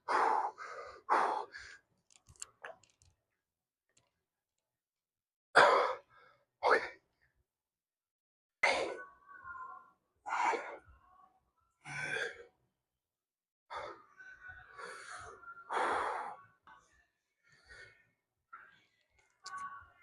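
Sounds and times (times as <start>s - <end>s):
man breathing hard: 0.0s - 1.9s, 14.7s - 16.4s.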